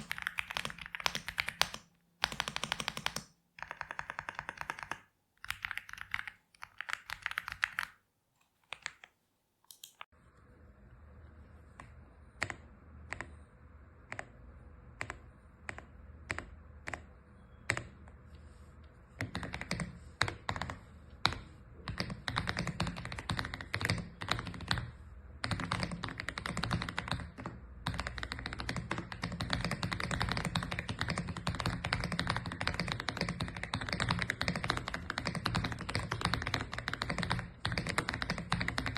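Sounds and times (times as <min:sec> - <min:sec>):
mechanical keyboard typing: 0:00.0 - 0:08.0, 0:08.6 - 0:09.1, 0:09.7 - 0:10.1, 0:15.0 - 0:17.1, 0:19.2 - 0:38.9.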